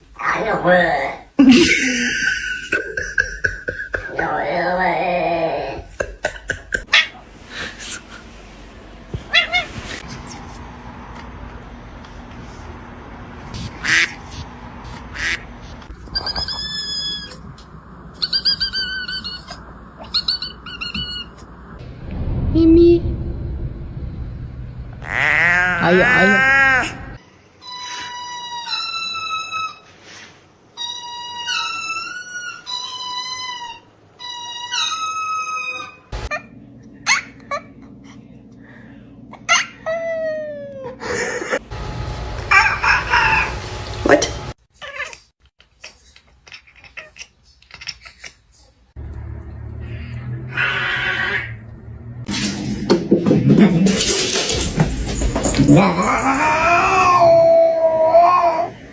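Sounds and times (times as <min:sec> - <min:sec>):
cat chirping: 0:16.0 - 0:17.4, 0:18.2 - 0:21.4
cat calling: 0:50.5 - 0:51.6.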